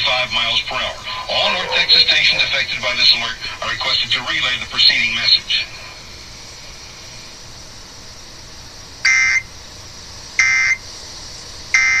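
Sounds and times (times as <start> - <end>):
faint radio hiss: 0.0 - 12.0.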